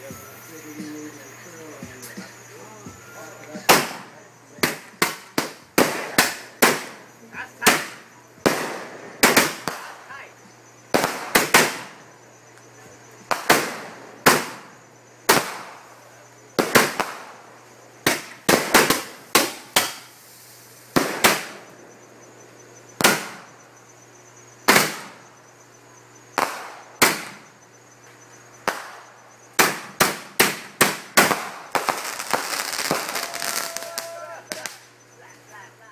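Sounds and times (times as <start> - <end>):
crackling firework volley: 0.0 - 35.8
aerial firework bangs: 4.6 - 7.0, 7.7 - 9.9, 13.3 - 14.7, 15.3 - 15.8, 18.0 - 20.1, 20.9 - 21.6, 23.0 - 23.5, 24.7 - 25.2, 26.4 - 27.4, 28.7 - 33.2.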